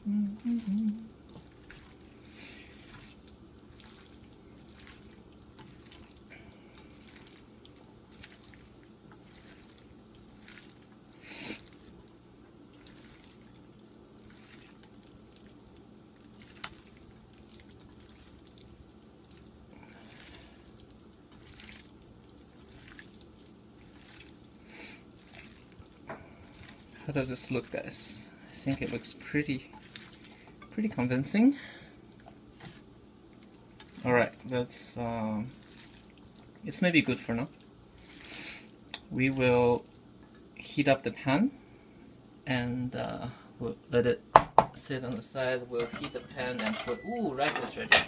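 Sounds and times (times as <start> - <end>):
hands squelching marinade into chicken: 0.6 - 40.6.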